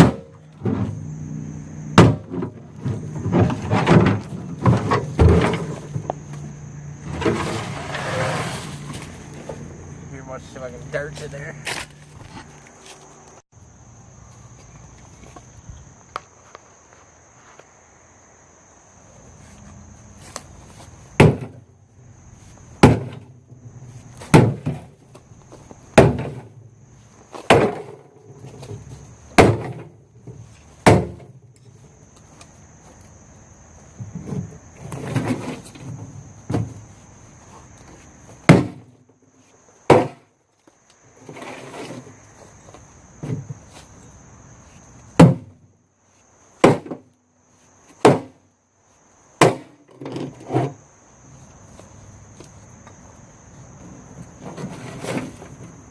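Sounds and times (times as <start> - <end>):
axe chopping into metal tank: 0.0 - 0.9, 2.0 - 2.5, 21.2 - 21.6, 22.8 - 23.2, 24.3 - 24.9, 26.0 - 26.5, 27.5 - 28.0, 29.4 - 29.9, 30.8 - 31.3, 38.5 - 38.8, 39.9 - 40.2, 45.2 - 45.5, 46.6 - 47.0, 48.0 - 48.4, 49.4 - 50.2
crickets chirping: 0.0 - 55.9.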